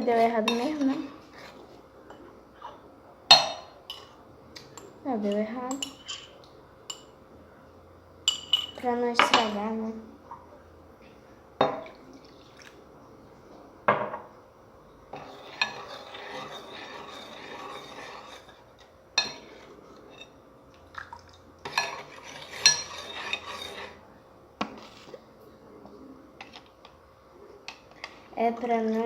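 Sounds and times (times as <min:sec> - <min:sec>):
scraping and stirring slime: 0:00.0 - 0:02.8, 0:15.1 - 0:24.0, 0:24.6 - 0:27.0, 0:27.6 - 0:29.0
utensil clinking against a dish: 0:00.0 - 0:07.2, 0:08.2 - 0:09.7, 0:15.1 - 0:18.6, 0:19.2 - 0:20.4, 0:21.6 - 0:24.0.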